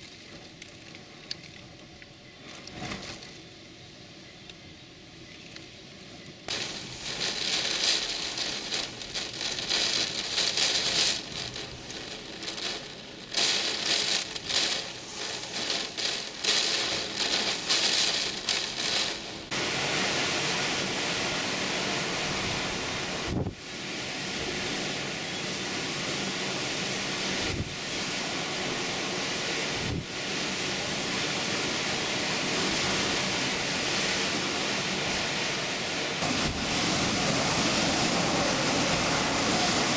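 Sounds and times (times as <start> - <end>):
rain: 0.0 - 39.9
strong wind gusts: 19.5 - 39.9.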